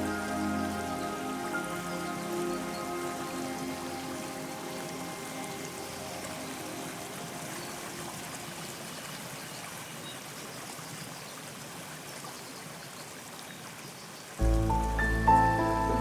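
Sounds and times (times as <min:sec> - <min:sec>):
faint music: 0:00.0 - 0:09.0, 0:14.4 - 0:16.0
running water hissing: 0:14.4 - 0:16.0.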